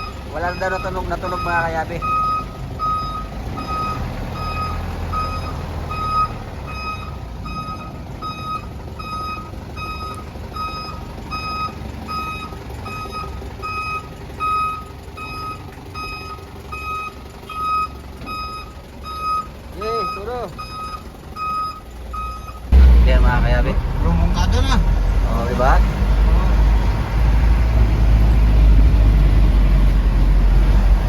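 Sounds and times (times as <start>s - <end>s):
reversing alarm beeping: 0.0s - 22.7s
vehicle engine running: 0.0s - 31.0s.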